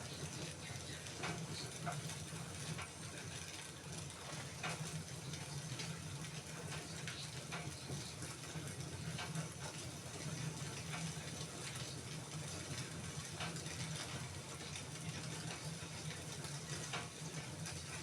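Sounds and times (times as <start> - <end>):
wood fire crackling: 0.0 - 18.0.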